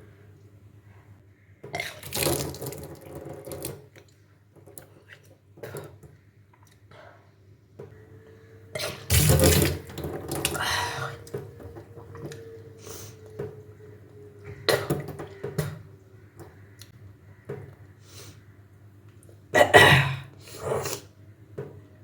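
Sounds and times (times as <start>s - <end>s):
water gushing and splashing: 8.8s - 13.2s.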